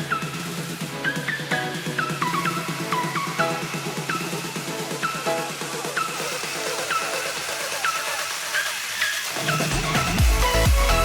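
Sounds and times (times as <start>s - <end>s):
electronic music with steady beat: 0.0s - 11.0s.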